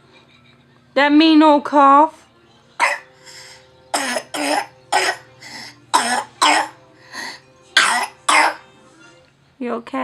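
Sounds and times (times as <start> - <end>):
toddler coughing: 2.8 - 3.1, 3.9 - 5.3, 5.9 - 6.8, 7.8 - 8.7.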